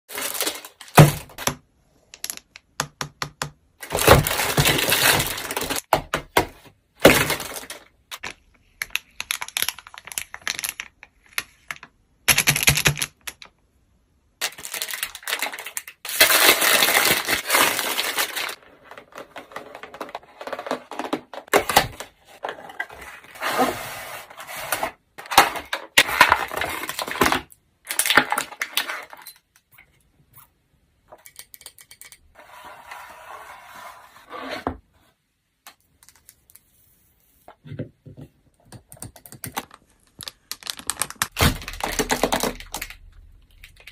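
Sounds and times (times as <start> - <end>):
packaging crinkling and tearing: 0.1 - 1.2, 14.4 - 22.0, 39.6 - 43.9.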